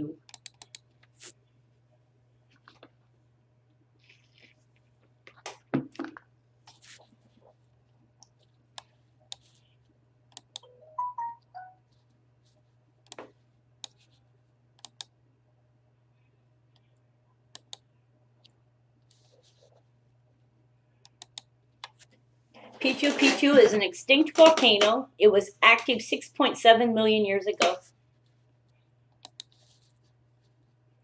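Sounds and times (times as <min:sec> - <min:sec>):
faint low hum: 0:00.0 - 0:24.3
keyboard typing: 0:00.3 - 0:00.9, 0:10.3 - 0:11.8
short tonal notes: 0:10.7 - 0:11.8
mouse clicks: 0:14.8 - 0:15.1, 0:21.0 - 0:22.0, 0:29.2 - 0:29.6.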